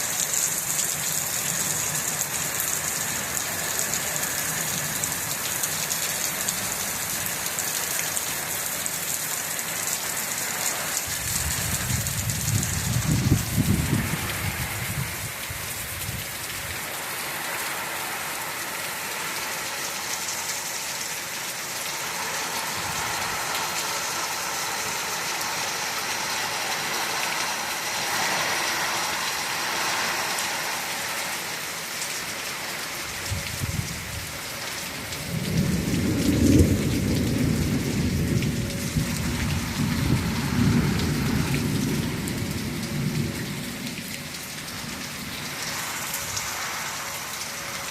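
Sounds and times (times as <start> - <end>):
steady rain: 0.0 - 47.9
low rumble of thunder: 11.1 - 16.8, 33.2 - 34.4, 35.0 - 45.4.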